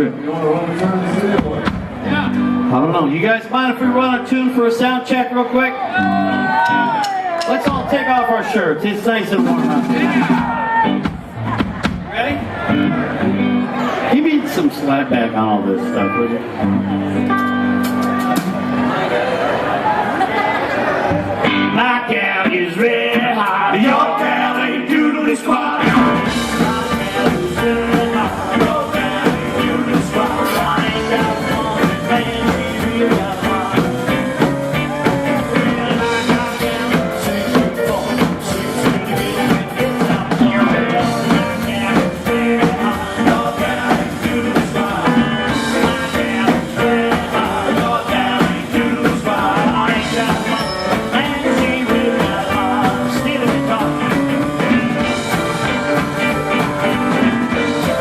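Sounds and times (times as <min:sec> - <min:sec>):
live rock and roll band: 0:00.0 - 0:58.0
drum hits: 0:01.3 - 0:02.3, 0:07.4 - 0:08.0, 0:09.4 - 0:12.4.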